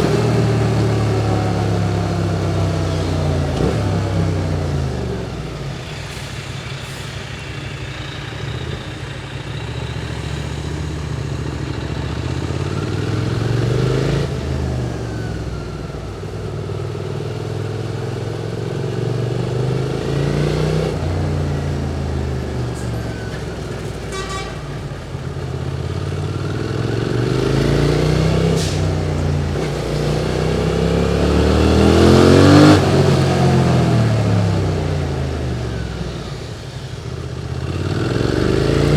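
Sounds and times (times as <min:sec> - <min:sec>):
motorcycle engine revving: 0:00.0 - 0:05.9, 0:24.1 - 0:38.9.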